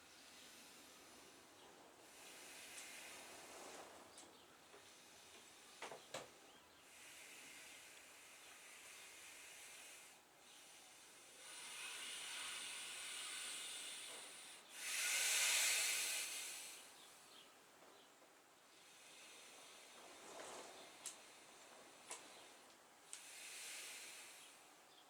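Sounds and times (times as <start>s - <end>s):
person breathing deeply: 6.8s - 17.4s, 23.2s - 24.7s.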